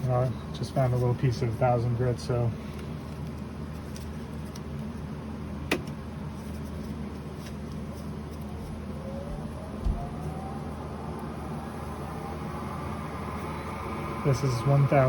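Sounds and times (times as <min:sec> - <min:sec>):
rising whine: 0:08.5 - 0:15.0
lathe motor humming: 0:09.0 - 0:15.0.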